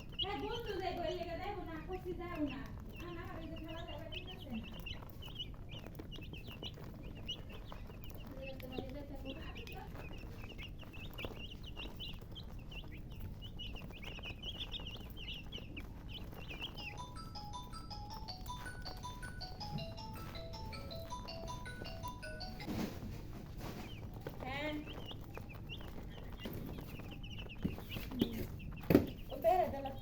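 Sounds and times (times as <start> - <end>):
baby chicks peeping: 0.0 - 30.0
low steady background hum: 0.0 - 30.0.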